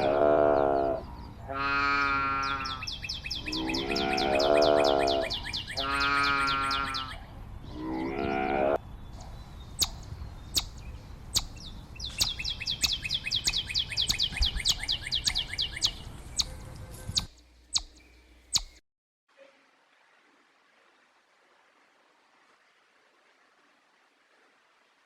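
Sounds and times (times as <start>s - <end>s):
bird chirping: 2.0s - 7.8s, 8.8s - 18.8s.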